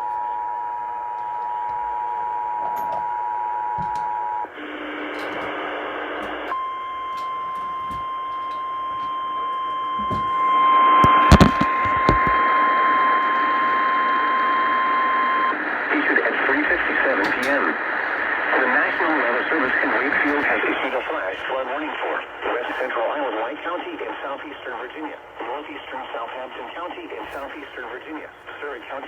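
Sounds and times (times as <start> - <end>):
steady alarm tone: 0.0 - 21.5
radio static hiss: 3.7 - 6.8, 9.3 - 29.0.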